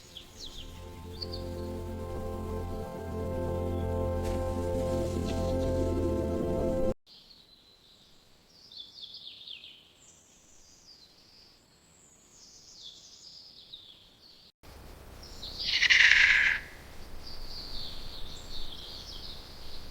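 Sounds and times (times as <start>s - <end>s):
louder bird call: 15.6s - 16.8s.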